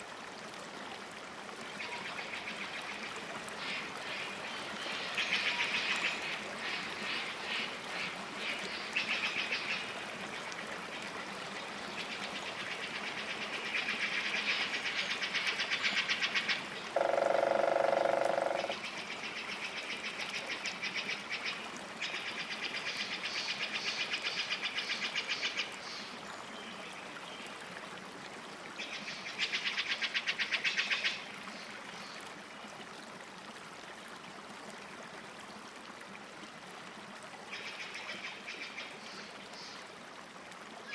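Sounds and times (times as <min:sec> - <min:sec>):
animal pulsed trill calls: 0:17.0 - 0:18.8
longer lower animal call: 0:17.0 - 0:18.8.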